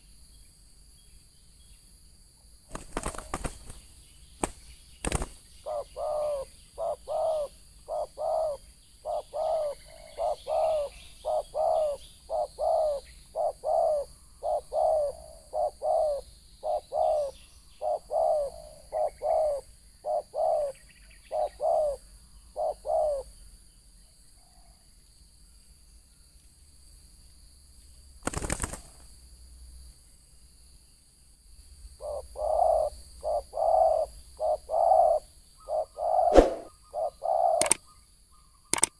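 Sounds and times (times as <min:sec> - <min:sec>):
dove cooing: 0:05.1 - 0:23.3, 0:32.0 - 0:37.8.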